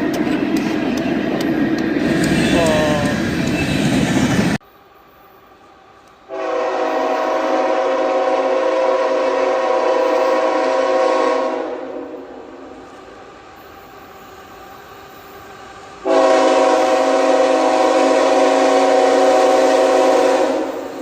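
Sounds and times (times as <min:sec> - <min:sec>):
locomotive air horn blast: 0:06.3 - 0:12.3, 0:16.0 - 0:21.0.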